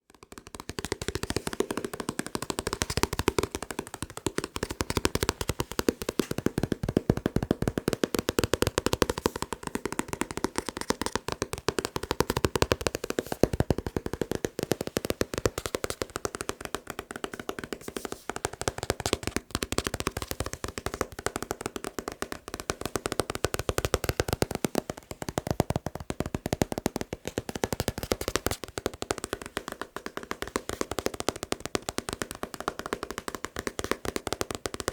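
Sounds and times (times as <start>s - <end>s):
fast tapping on a paper book: 0.0s - 34.9s.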